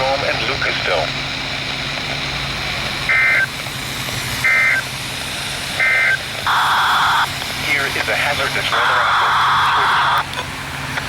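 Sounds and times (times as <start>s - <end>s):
steady low hum: 0.0s - 11.0s
warbling digital data bursts: 3.1s - 3.6s, 4.4s - 4.9s, 5.8s - 10.3s.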